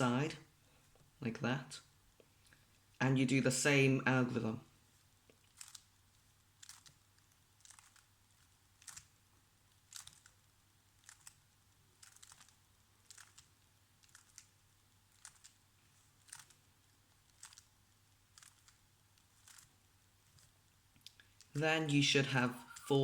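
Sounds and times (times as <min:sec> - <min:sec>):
puzzle cube layers clicking: 0:05.3 - 0:20.6.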